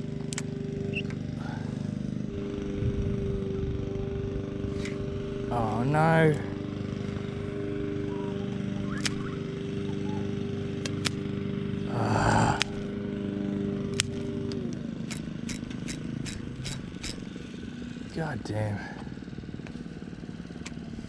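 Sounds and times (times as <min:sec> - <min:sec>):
engine-like hum: 0:00.0 - 0:21.0
sharp clicks: 0:08.8 - 0:09.4, 0:10.8 - 0:11.2, 0:13.9 - 0:14.2, 0:15.0 - 0:17.3.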